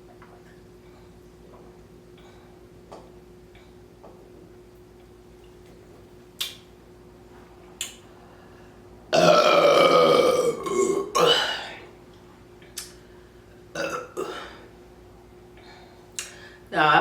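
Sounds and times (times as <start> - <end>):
woman burping: 9.1 - 11.9, 13.8 - 14.6.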